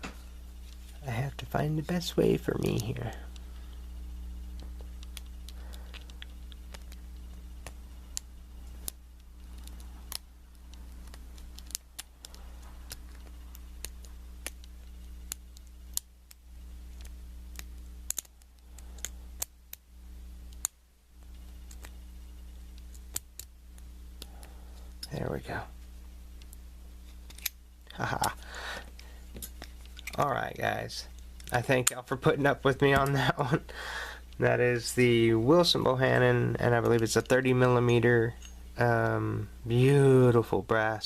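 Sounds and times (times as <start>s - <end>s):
low hum: 0.0s - 41.0s
lock pick clicking and scraping: 27.2s - 27.6s.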